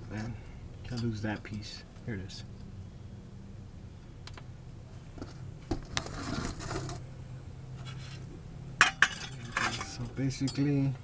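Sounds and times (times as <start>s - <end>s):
metal parts and tools clinking: 8.8s - 10.8s.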